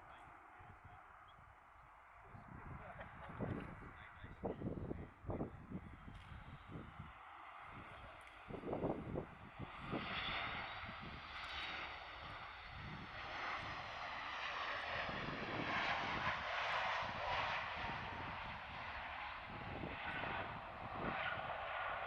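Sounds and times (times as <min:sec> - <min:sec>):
jet engine whine: 0:00.0 - 0:22.0
jet airliner engine rush: 0:00.5 - 0:22.0.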